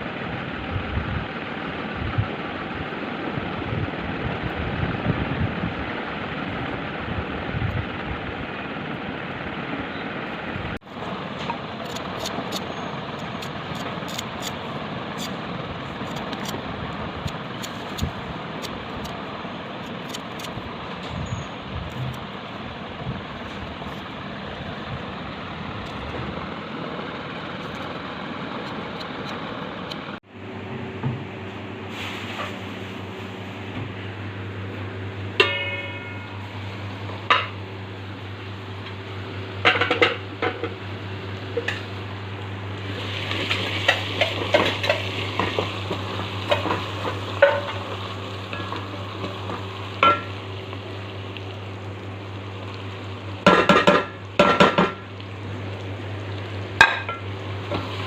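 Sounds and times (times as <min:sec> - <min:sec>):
steady low hum: 0:00.0 - 0:58.0
oil sizzling in a pan: 0:42.8 - 0:58.0.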